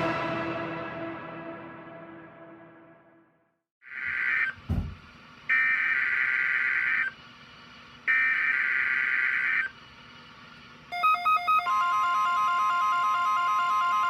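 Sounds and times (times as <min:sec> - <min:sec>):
low thump: 0:04.6 - 0:05.0.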